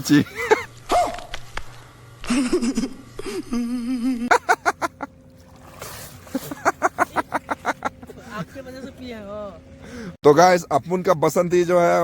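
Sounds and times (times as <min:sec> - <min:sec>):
men laughing: 0:00.2 - 0:00.7, 0:02.2 - 0:05.2, 0:06.2 - 0:09.1
men talking: 0:08.1 - 0:12.0.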